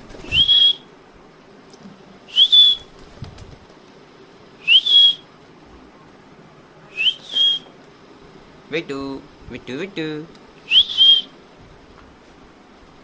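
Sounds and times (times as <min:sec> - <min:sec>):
rising whistled calls: 0:00.1 - 0:01.0, 0:02.3 - 0:03.0, 0:04.6 - 0:05.3, 0:06.9 - 0:07.8, 0:10.6 - 0:11.4.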